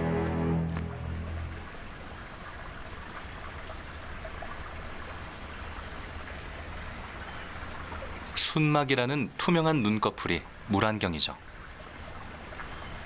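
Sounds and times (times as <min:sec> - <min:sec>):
background music: 0:00.0 - 0:01.8
flowing water: 0:00.0 - 0:13.0.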